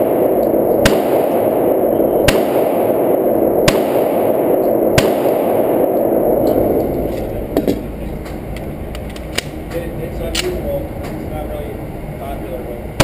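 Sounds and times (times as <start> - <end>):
pistol shots: 0.0 - 8.4
steady rushing noise: 0.0 - 13.0.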